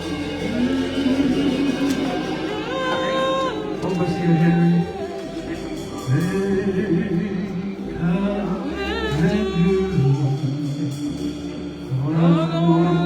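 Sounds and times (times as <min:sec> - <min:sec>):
low musical accompaniment: 0:00.0 - 0:13.0
voices singing gospel song: 0:00.0 - 0:13.0.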